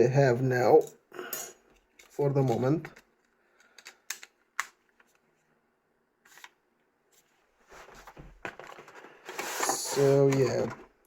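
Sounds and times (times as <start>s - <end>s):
soft handling noise: 6.2s - 11.0s.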